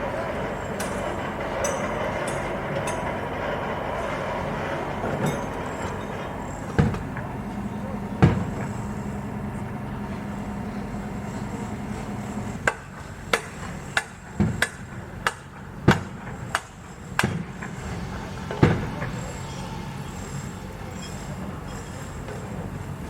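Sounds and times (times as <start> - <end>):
low machine drone: 0.0 - 23.0
hammer blows: 12.6 - 22.5.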